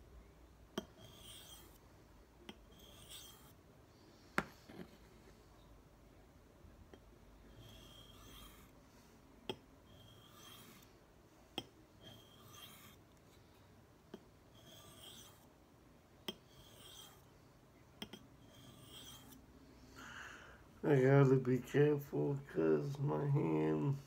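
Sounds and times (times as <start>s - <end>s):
knife rasping on sharpening stone: 0.8s - 1.8s, 2.6s - 3.6s, 7.5s - 8.7s, 9.9s - 10.9s, 12.0s - 13.0s, 14.5s - 15.5s, 16.3s - 17.3s, 18.0s - 19.4s.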